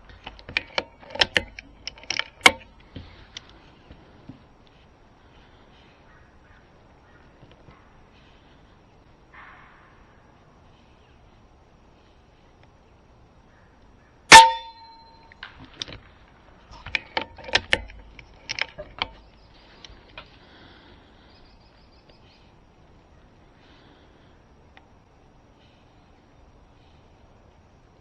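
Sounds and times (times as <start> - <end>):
gun lever clicks and clacks: 0.0 - 3.5, 16.7 - 19.3.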